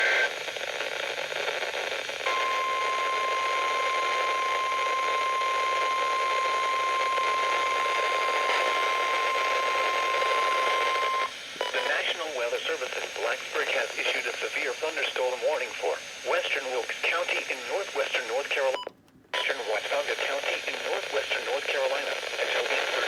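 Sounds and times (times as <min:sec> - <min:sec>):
radio static hiss: 0:00.0 - 0:18.8, 0:19.4 - 0:23.0
steady high alarm tone: 0:02.3 - 0:11.3.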